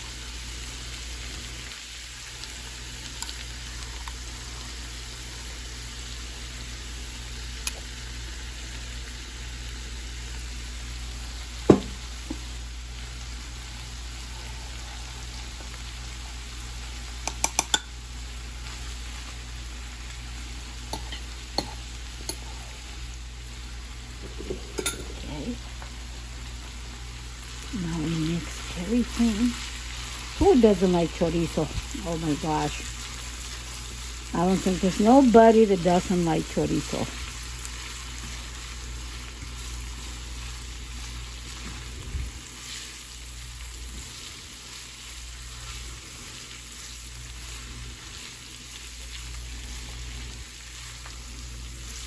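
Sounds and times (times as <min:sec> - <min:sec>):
meat sizzling in a pan: 0:00.0 - 0:52.0
sharp knock: 0:11.7 - 0:12.0
utensil tapping pan: 0:11.7 - 0:12.4, 0:17.2 - 0:17.9, 0:24.2 - 0:25.2
utensil stirring and scraping pan: 0:20.9 - 0:22.6.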